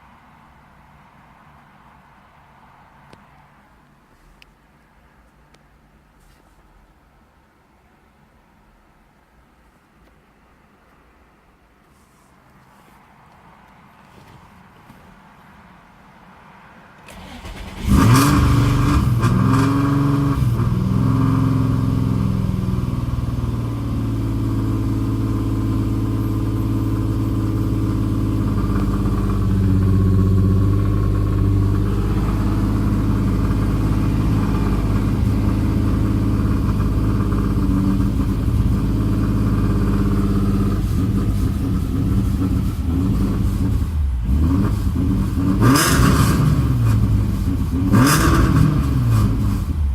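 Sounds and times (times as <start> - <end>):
car engine starting and idling: 16.9 - 49.9
loud car exhaust: 17.1 - 49.9.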